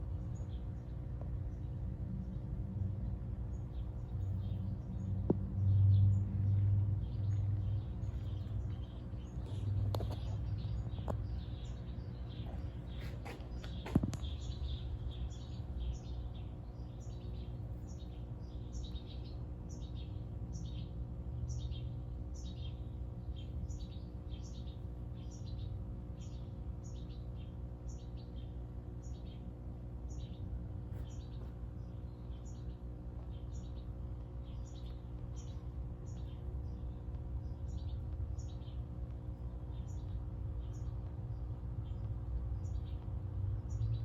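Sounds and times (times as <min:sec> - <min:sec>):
steady low hum: 0:00.0 - 0:44.0
small bird chirping: 0:03.5 - 0:44.0.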